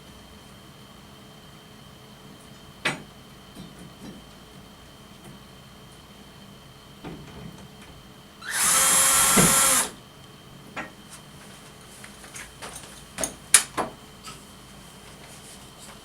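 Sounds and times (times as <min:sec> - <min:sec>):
power drill running: 0:08.4 - 0:10.0.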